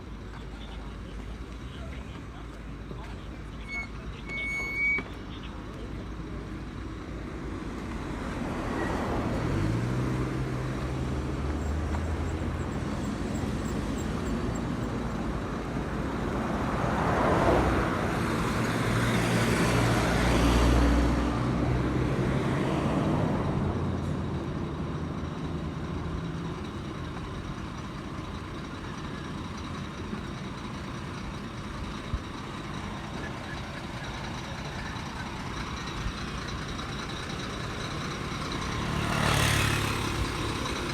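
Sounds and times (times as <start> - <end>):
background traffic hum: 0.0 - 40.9
large vehicle passing close: 28.2 - 40.9
engine revving: 37.6 - 40.9.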